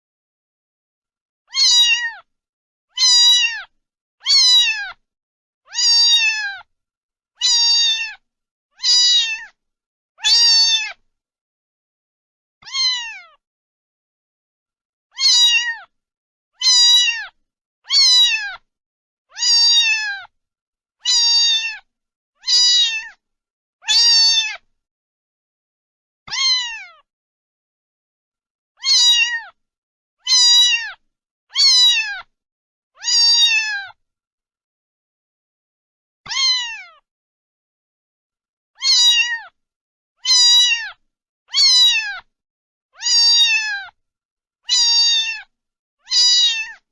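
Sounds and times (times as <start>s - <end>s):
cat meowing: 1.5s - 2.3s, 2.9s - 5.0s, 5.7s - 6.7s, 7.4s - 8.2s, 8.8s - 9.6s, 10.2s - 11.0s, 12.6s - 13.4s, 15.1s - 15.9s, 16.6s - 18.7s, 19.3s - 20.3s, 21.0s - 23.2s, 23.8s - 24.6s, 26.3s - 27.1s, 28.8s - 29.6s, 30.2s - 32.3s, 33.0s - 34.0s, 36.3s - 37.0s, 38.8s - 39.6s, 40.2s - 42.3s, 43.0s - 44.0s, 44.7s - 46.9s.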